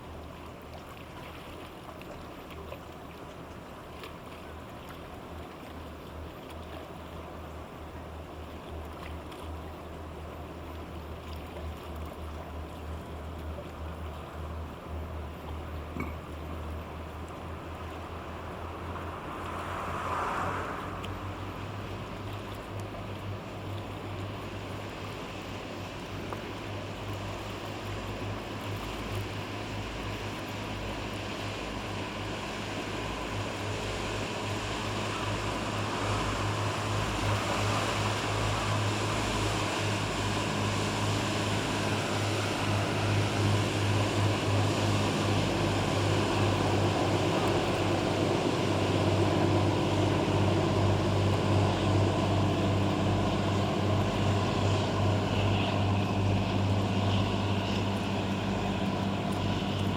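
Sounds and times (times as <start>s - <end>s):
boat engine humming: 0.0s - 59.9s
water washing: 16.4s - 59.9s.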